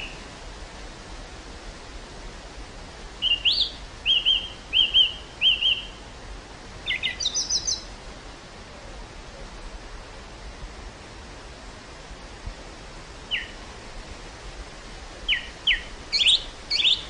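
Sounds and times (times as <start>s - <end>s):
songbird singing: 0.0s - 0.3s, 3.2s - 6.1s, 6.8s - 8.0s, 13.2s - 13.6s, 15.1s - 17.0s
wind hiss: 0.0s - 17.0s.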